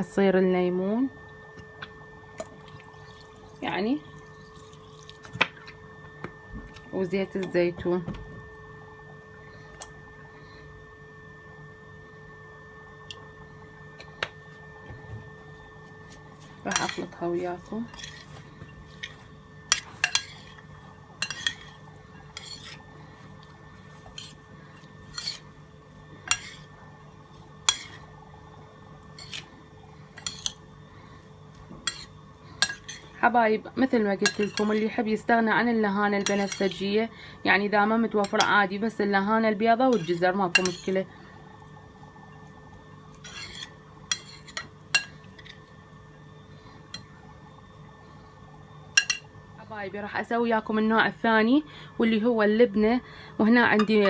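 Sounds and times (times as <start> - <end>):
faint steady hum: 0.0 - 54.0
utensils clinking against bowl: 16.7 - 17.2, 17.8 - 22.8, 25.0 - 25.5, 26.3 - 26.7, 30.2 - 30.6, 31.8 - 33.1, 34.2 - 34.9, 36.2 - 36.9, 39.9 - 41.0, 43.2 - 45.6, 49.0 - 49.3
utensil clinking against bowl: 34.2 - 34.8, 39.9 - 41.0.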